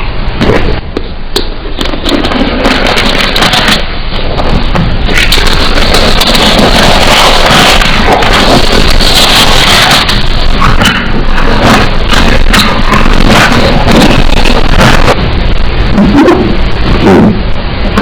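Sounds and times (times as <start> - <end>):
crunching while eating: 1.8 - 15.2.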